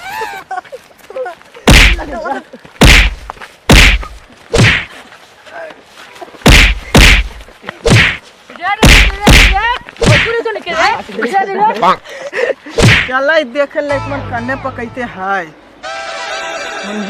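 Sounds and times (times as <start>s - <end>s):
heavy whacks of blows: 1.7s - 2.0s, 2.8s - 4.9s, 6.4s - 8.2s, 8.8s - 10.4s, 12.8s - 13.1s.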